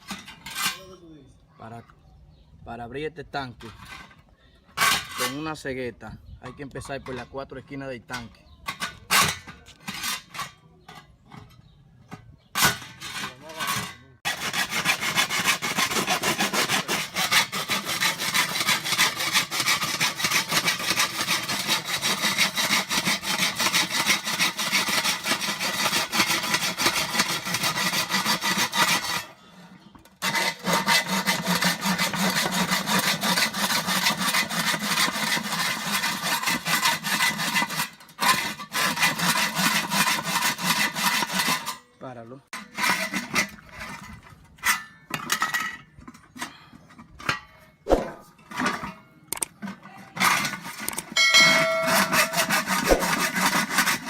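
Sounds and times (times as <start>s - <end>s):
hacksaw cutting metal: 8.1s - 11.8s, 12.5s - 42.0s, 42.6s - 45.6s, 50.2s - 54.0s.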